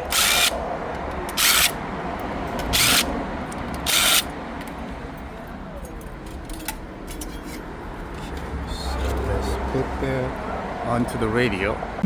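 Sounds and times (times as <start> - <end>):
cordless power screwdriver: 0.0 - 0.6, 3.9 - 4.2.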